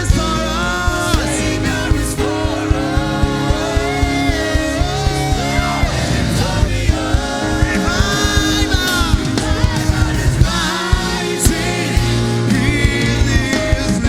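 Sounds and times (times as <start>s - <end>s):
bass and keyboard notes: 0.0s - 14.0s
person singing: 0.0s - 14.0s
steady drum beat: 0.0s - 14.0s.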